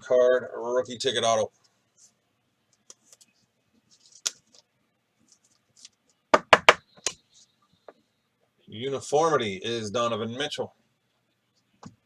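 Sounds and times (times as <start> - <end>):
cards rustling: 3.9 - 4.6.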